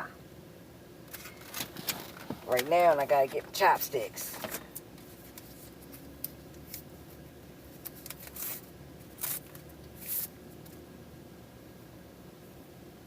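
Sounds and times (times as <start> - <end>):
packaging rustling and scraping: 1.1 - 2.7, 7.8 - 10.3.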